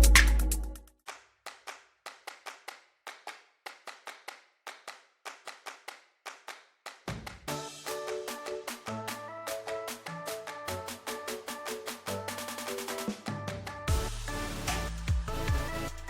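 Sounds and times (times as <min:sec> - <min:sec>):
sharp clap-like clicks: 0:01.1 - 0:13.2.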